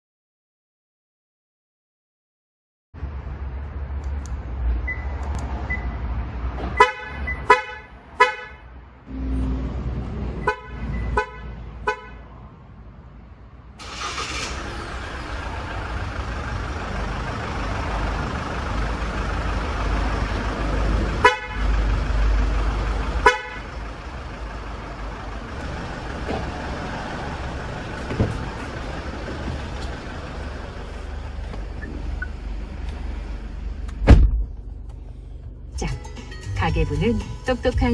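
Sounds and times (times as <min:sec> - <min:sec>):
car horn chirps: 0:06.7 - 0:09.7, 0:10.4 - 0:12.2, 0:21.2 - 0:21.7, 0:23.2 - 0:23.8
car engine running: 0:13.8 - 0:37.9.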